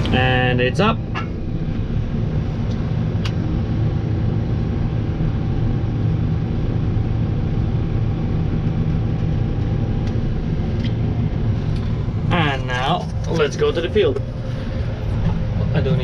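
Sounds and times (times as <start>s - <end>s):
tractor engine running: 0.0s - 3.2s, 9.6s - 16.0s.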